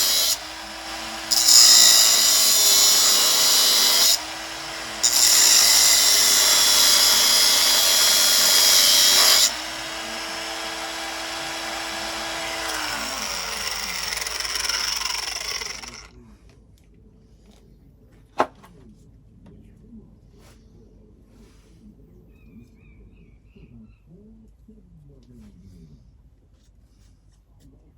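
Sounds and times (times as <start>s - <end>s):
angle grinder cutting steel: 0.0s - 16.1s
grinder spinning free whine: 0.0s - 16.1s
sharp knock: 18.4s - 18.7s.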